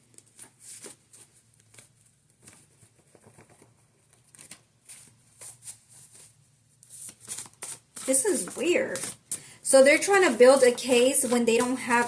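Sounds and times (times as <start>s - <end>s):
cards shuffling: 0.0s - 9.6s.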